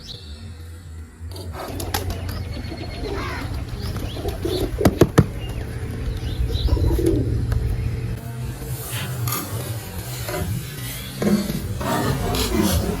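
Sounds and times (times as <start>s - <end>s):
pigeons calling: 1.3s - 8.2s, 9.6s - 13.0s
pigeons flapping wings: 1.6s - 8.0s.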